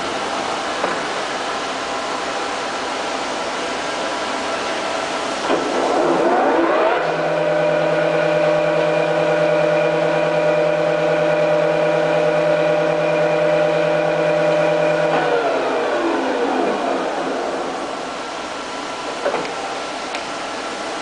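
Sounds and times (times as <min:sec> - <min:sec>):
lathe running: 0:05.7 - 0:19.0.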